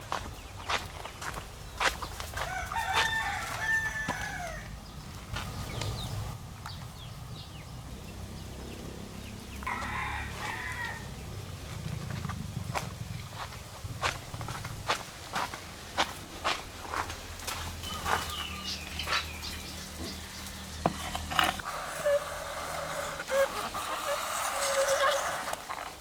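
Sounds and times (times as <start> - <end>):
rooster crowing: 2.2 - 5.1, 9.4 - 11.4.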